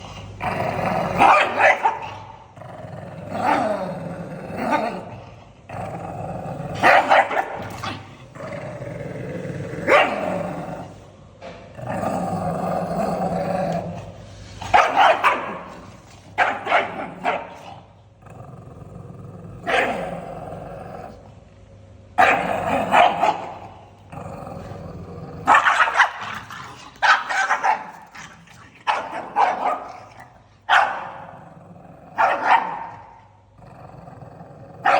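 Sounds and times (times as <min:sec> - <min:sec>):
dog growling: 0:00.0 - 0:11.1, 0:11.7 - 0:14.6, 0:15.4 - 0:21.3, 0:22.2 - 0:34.9
dog barking: 0:01.2 - 0:02.3, 0:06.8 - 0:07.6, 0:09.9 - 0:10.2, 0:14.7 - 0:15.7, 0:16.4 - 0:17.7, 0:19.6 - 0:20.1, 0:22.2 - 0:23.6, 0:25.4 - 0:26.4, 0:27.0 - 0:28.0, 0:28.9 - 0:30.1, 0:30.7 - 0:31.3, 0:32.2 - 0:33.2.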